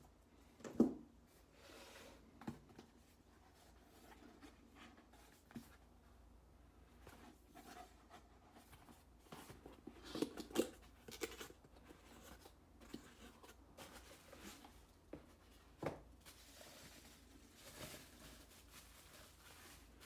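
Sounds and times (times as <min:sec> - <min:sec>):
packaging rustling: 0:16.2 - 0:20.0.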